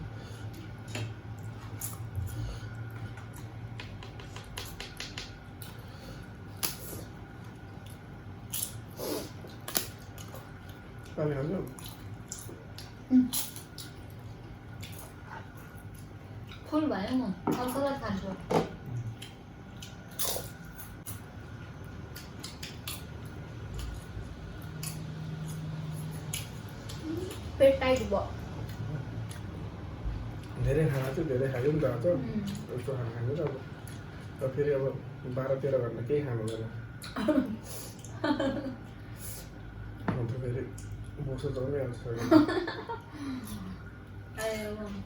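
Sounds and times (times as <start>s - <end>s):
low steady hum: 0.0s - 45.0s
chewing: 0.5s - 4.8s, 6.6s - 16.7s, 21.9s - 27.6s, 28.6s - 29.7s.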